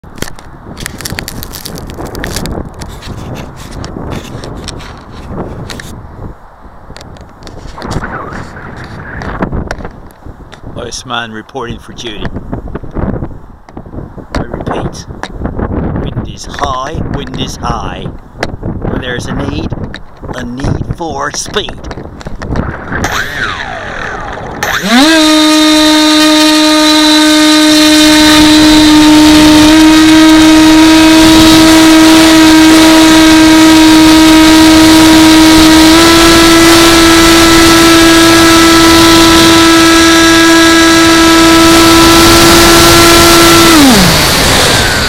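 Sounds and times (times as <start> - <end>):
model plane propeller whine: 21.9 - 45.0.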